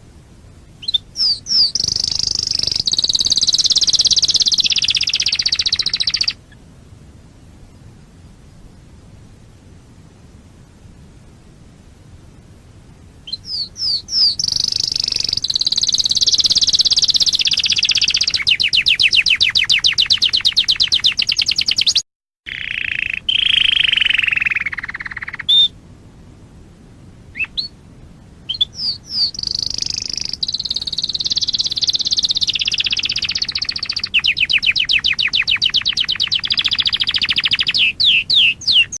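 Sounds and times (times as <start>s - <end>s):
canary singing trills: 0.7s - 6.6s, 13.2s - 25.8s, 27.3s - 27.8s, 28.4s - 39.0s.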